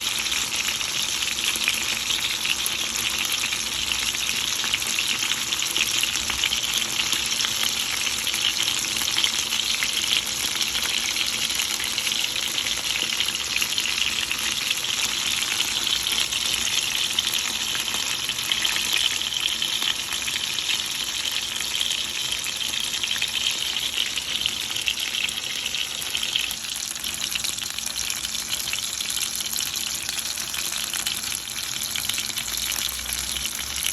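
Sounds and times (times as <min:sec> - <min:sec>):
food sizzling in hot oil: 0:00.0 - 0:33.9.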